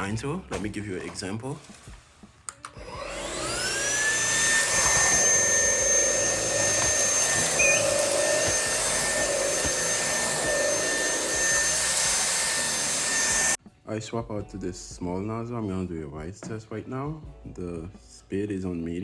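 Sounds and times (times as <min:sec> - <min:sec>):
stick vacuum motor whine: 0:02.6 - 0:13.6.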